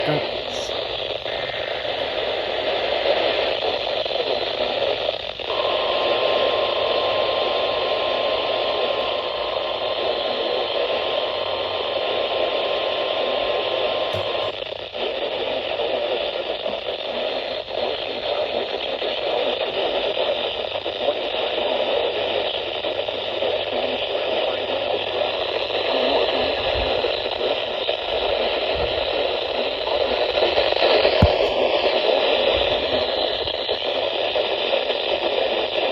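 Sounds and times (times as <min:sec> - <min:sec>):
radio static hiss: 0:00.0 - 0:35.9
faint steady tone: 0:14.1 - 0:14.6.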